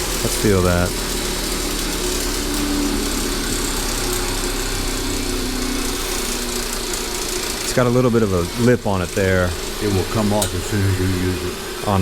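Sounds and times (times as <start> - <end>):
electric grinding wheel running: 0.0 - 12.0.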